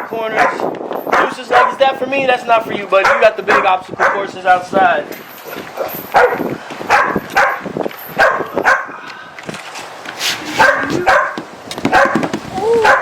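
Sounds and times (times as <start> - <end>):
puppies barking and yipping: 0.0 - 2.0, 3.0 - 4.4, 5.4 - 8.9, 10.5 - 13.0.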